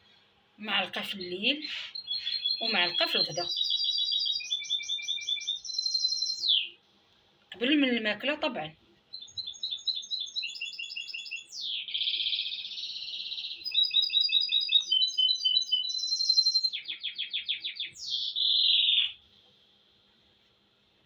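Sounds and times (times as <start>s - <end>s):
songbird trilling: 1.6s - 6.8s, 9.2s - 19.2s.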